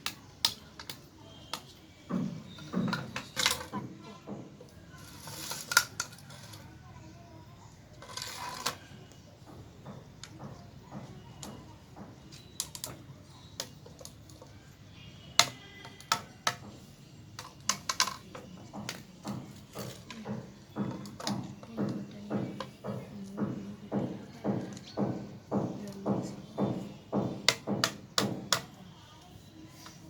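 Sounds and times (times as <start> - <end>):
plastic pipe pieces clicking and knocking: 15.4 - 22.4.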